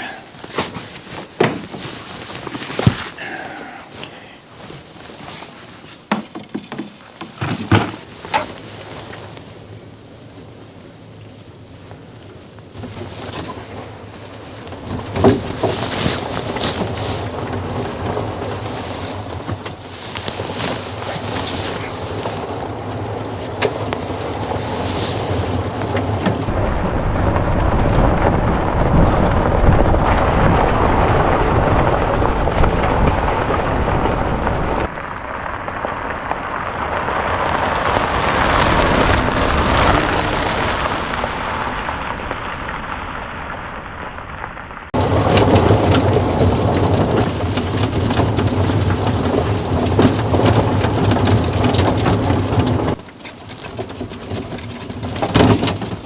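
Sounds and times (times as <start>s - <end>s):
golf cart rattling: 0.0s - 4.0s, 4.6s - 27.5s, 37.1s - 43.0s, 44.9s - 56.0s
wind buffeting microphone: 8.0s - 53.1s.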